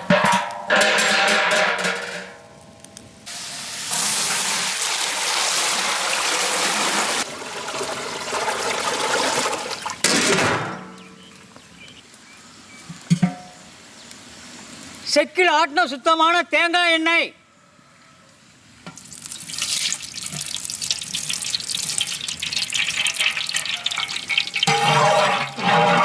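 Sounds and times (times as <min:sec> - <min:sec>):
liquid pouring into a vessel: 0:04.0 - 0:10.0, 0:19.0 - 0:25.7.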